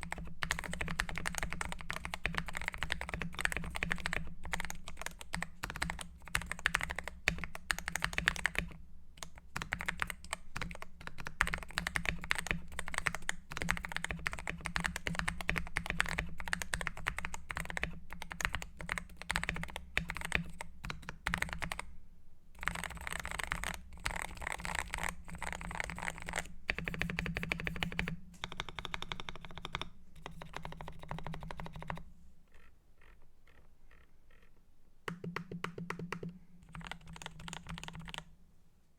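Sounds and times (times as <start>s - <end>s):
typing on mechanical keyboard: 0.0s - 21.9s, 22.6s - 32.0s, 35.1s - 38.3s.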